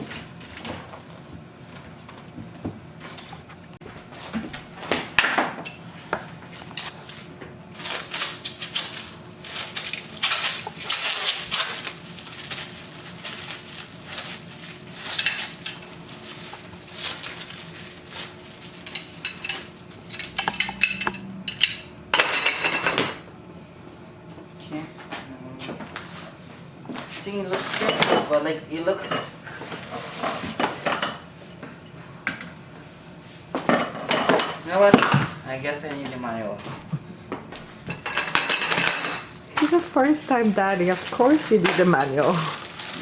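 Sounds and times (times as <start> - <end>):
metal tubes clicking and clattering: 18.9 - 21.8.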